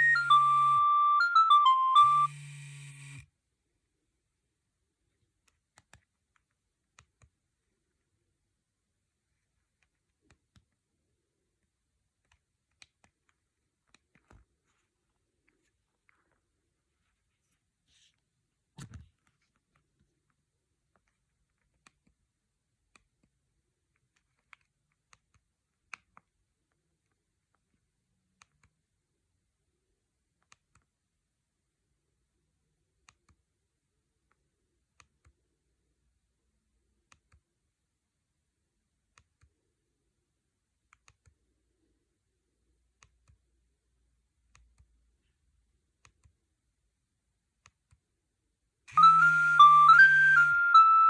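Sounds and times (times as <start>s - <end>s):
phone ringtone melody: 0.0s - 2.6s, 48.9s - 51.0s.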